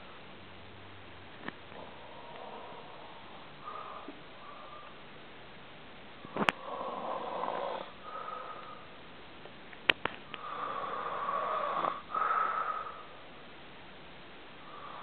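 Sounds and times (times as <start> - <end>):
person snoring heavily: 1.8 - 4.8, 6.3 - 8.9, 10.4 - 13.2.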